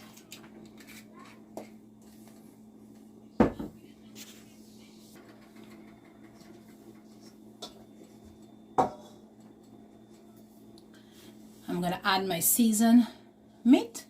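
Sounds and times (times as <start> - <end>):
steady low hum: 0.0 - 14.0
kitchenware knocking: 8.8 - 9.1.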